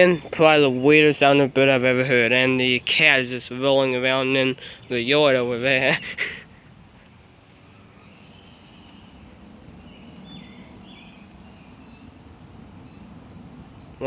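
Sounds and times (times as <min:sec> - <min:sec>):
low outdoor background noise: 0:00.0 - 0:14.0
faint high bird calls: 0:04.3 - 0:12.2.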